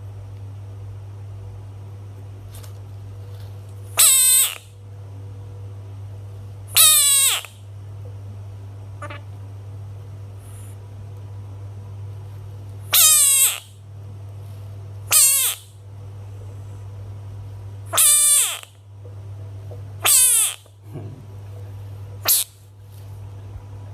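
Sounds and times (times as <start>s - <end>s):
steady low hum: 0.0s - 23.9s
bullfrog calling: 4.0s - 4.7s, 6.7s - 7.6s, 9.0s - 9.3s, 12.9s - 13.8s, 15.1s - 15.8s, 17.9s - 18.8s, 20.0s - 21.3s, 22.2s - 22.6s.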